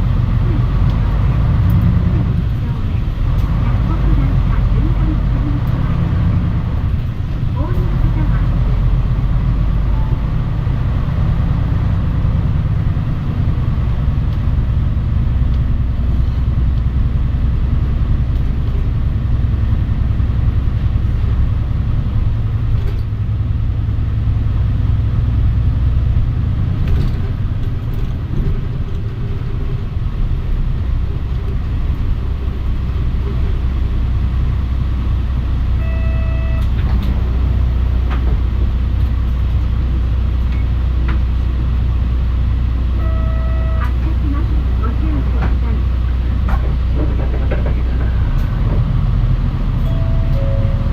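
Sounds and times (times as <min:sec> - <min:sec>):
bus engine and road rumble: 0:00.0 - 0:50.9
electronic chime: 0:35.8 - 0:36.6, 0:49.8 - 0:50.9.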